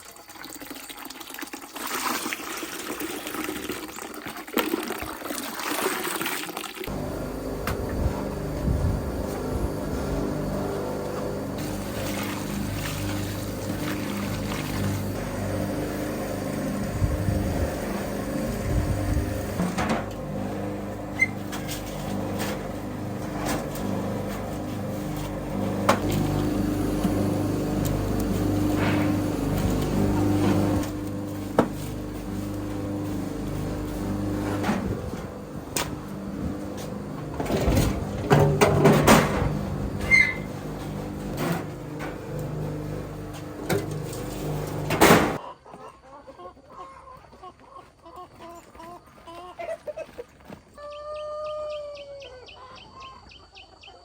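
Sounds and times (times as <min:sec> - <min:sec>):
machine motor humming: 0:06.9 - 0:45.4
machine knocking and clattering: 0:33.0 - 0:45.4
chickens clucking: 0:45.4 - 0:54.0.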